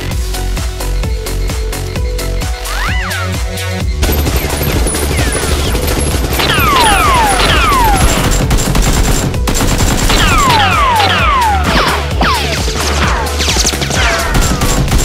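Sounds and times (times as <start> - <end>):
electronic background music: 0.0 - 15.0
automatic gunfire effects: 4.0 - 15.0.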